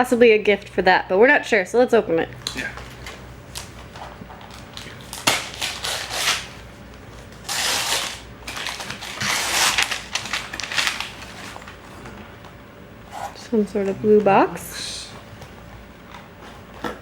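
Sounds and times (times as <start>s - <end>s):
paper crinkling and tearing: 4.5s - 6.6s, 7.4s - 11.8s.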